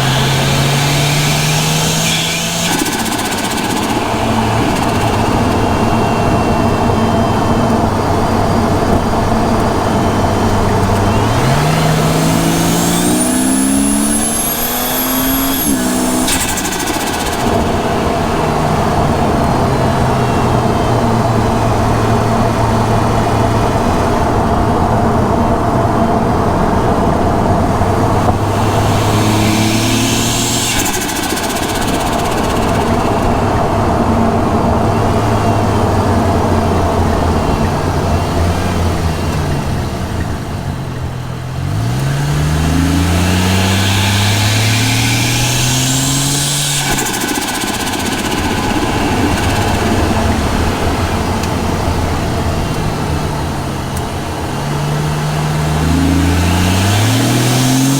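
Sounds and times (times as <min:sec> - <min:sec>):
turbo whistle: 0:00.0 - 0:07.6, 0:11.1 - 0:18.0, 0:28.4 - 0:33.4, 0:42.7 - 0:50.2
turbo flutter: 0:00.0 - 0:07.8, 0:10.8 - 0:18.9, 0:28.2 - 0:33.7, 0:42.7 - 0:51.4
car engine revving: 0:00.0 - 0:57.9.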